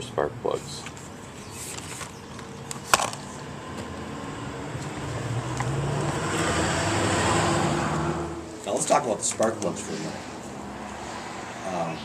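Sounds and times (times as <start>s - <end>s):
vehicle passing by: 3.4s - 12.0s.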